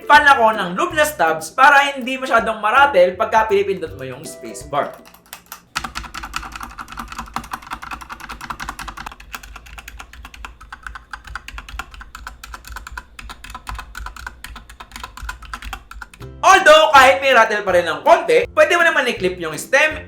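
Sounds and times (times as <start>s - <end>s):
rapid typing on mechanical keyboard: 4.9s - 16.3s.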